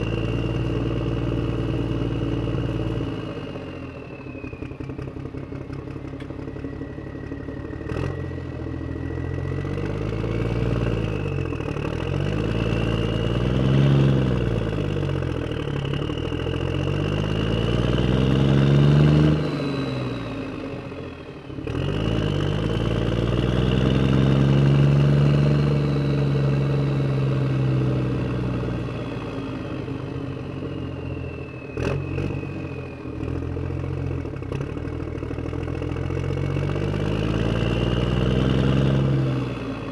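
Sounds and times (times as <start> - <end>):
truck engine revving: 7.7 - 20.9, 21.6 - 31.0, 31.6 - 39.9.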